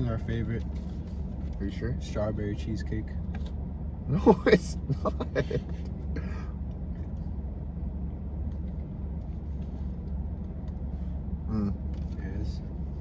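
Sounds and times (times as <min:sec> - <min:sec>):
car idling from inside: 0:00.0 - 0:13.0.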